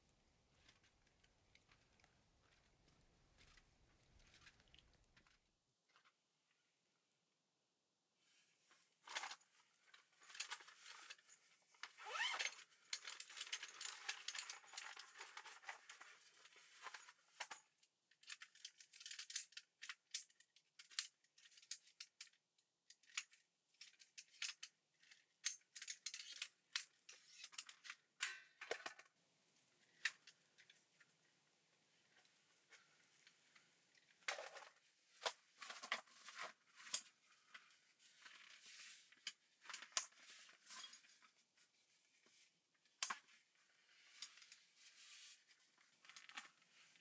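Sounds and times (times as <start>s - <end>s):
rustling and scraping: 32.3s - 47.0s.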